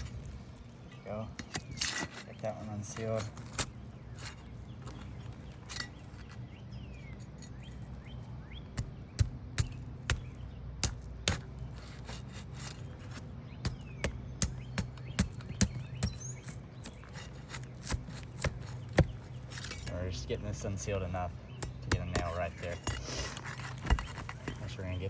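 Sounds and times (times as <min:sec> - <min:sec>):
shingle sealant snapping: 0:08.7 - 0:19.9, 0:20.9 - 0:24.8.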